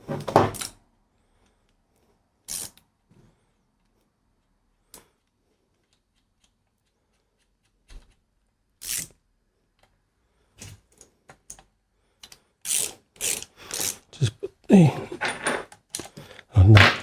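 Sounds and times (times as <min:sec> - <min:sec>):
metal parts clattering: 0:15.2 - 0:16.1
tools and metal parts clicking: 0:15.2 - 0:16.2.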